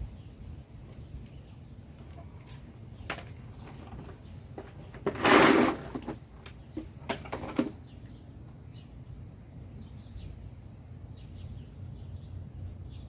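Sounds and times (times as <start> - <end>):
loud scraping noise: 5.0 - 6.2.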